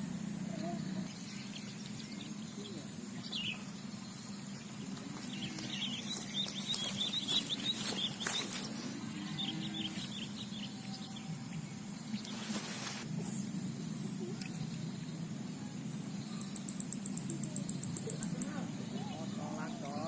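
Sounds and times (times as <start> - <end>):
low hum: 0.0 - 19.9
rustling: 4.9 - 9.0, 12.3 - 13.1.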